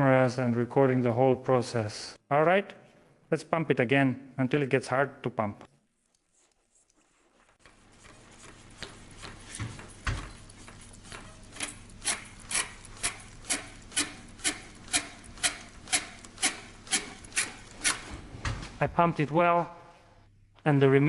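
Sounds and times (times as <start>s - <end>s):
fuel pump squeaking strokes: 9.2s - 18.2s.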